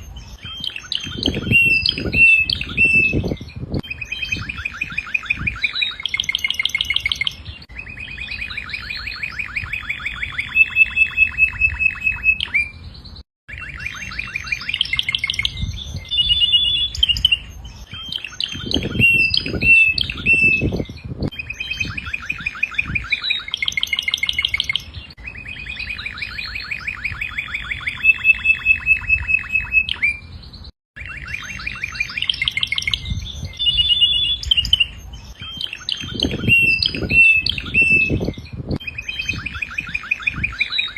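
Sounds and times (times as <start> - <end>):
canary singing trills: 0.0 - 40.9.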